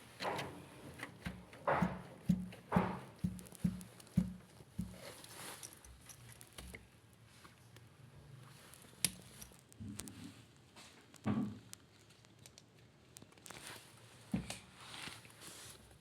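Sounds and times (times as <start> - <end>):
clicks and knocks of handling: 0.0 - 6.9
rustling: 0.0 - 7.6, 13.2 - 16.0.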